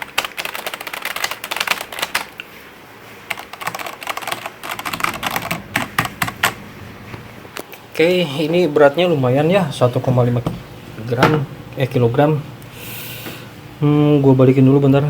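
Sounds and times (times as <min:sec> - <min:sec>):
fast typing on keyboard: 0:00.0 - 0:02.4, 0:03.3 - 0:06.6.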